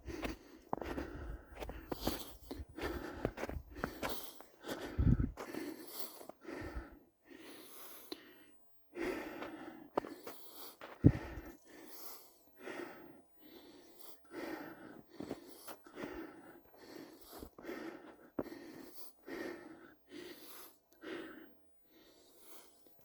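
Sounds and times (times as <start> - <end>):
footsteps crunching through snow: 0.0 - 6.3.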